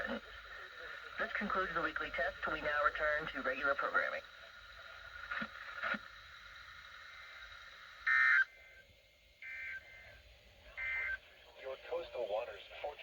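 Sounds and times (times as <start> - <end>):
faint radio hiss with whine: 0.0 - 13.0
short electronic beeps: 10.8 - 11.2.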